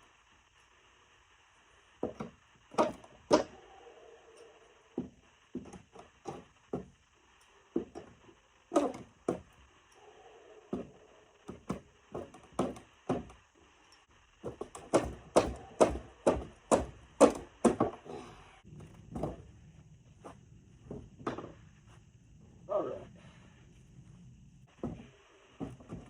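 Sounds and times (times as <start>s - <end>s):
hammer striking nails in wood: 2.0s - 3.6s, 5.0s - 6.9s, 7.7s - 9.5s, 11.5s - 13.4s, 14.4s - 18.0s.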